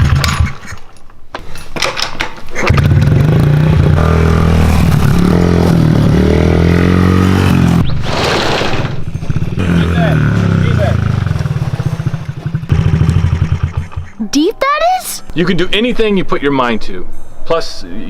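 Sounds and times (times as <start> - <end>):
motor engine running loudly: 9.2 - 14.1.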